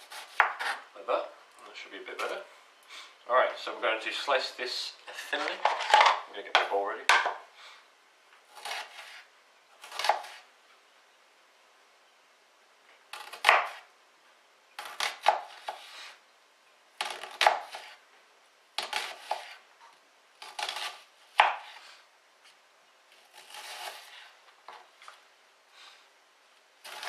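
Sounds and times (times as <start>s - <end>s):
knife slicing onion on board: 0.0s - 0.8s, 8.5s - 10.5s, 13.1s - 13.9s, 14.8s - 16.2s, 17.0s - 18.0s, 18.8s - 19.6s, 20.4s - 21.9s, 23.2s - 24.4s.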